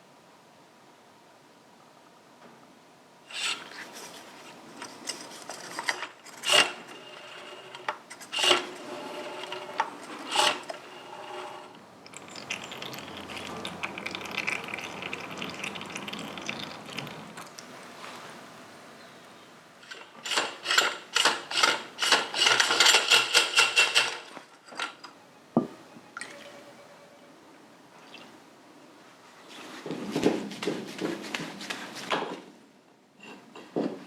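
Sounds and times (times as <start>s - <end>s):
steady scraping rub: 8.4s - 11.8s.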